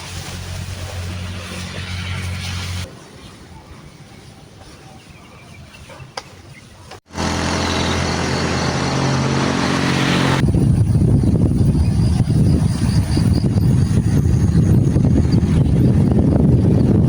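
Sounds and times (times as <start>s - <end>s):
vehicle engine running: 7.1s - 10.5s.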